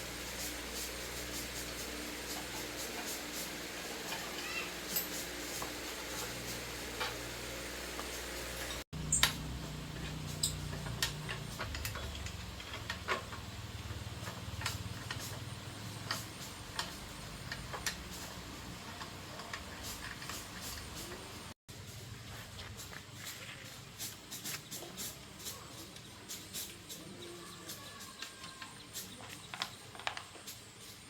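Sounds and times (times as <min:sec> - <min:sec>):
metal tools clicking and tapping: 0:04.1 - 0:05.7, 0:08.6 - 0:21.3.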